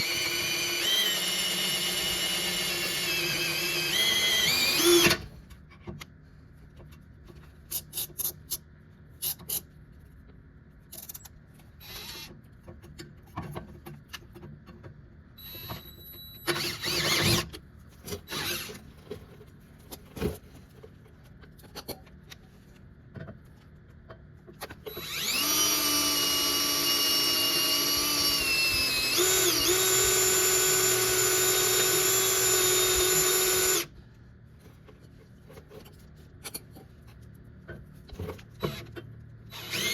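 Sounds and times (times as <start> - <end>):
electric drill drilling steel: 0.0 - 5.2, 16.5 - 17.4, 24.9 - 33.9, 39.5 - 39.9.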